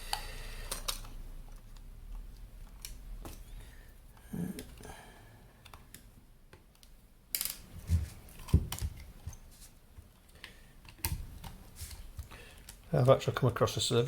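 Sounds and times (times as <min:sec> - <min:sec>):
clicks and knocks of handled parts: 0:00.1 - 0:03.5, 0:05.6 - 0:12.9.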